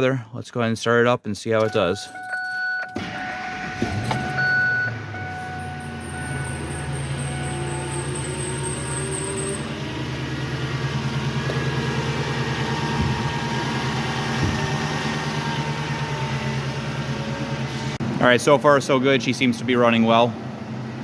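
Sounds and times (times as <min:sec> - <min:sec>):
truck engine idling: 0:01.7 - 0:21.0.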